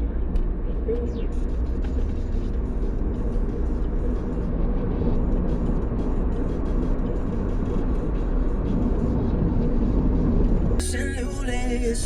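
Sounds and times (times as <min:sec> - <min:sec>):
car engine low rumble: 0:00.0 - 0:12.0.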